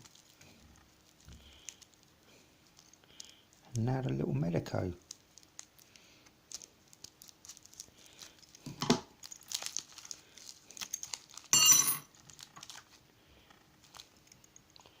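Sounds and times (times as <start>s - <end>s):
packaging rustling: 0.0s - 3.7s, 5.0s - 13.1s, 13.7s - 15.0s
packaging tearing: 5.0s - 11.5s, 12.1s - 13.0s.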